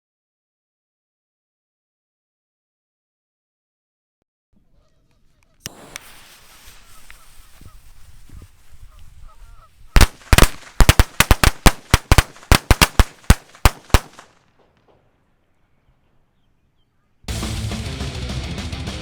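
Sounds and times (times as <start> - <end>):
firecrackers banging: 5.6 - 9.2, 10.0 - 15.1
fuse hissing: 5.6 - 9.4.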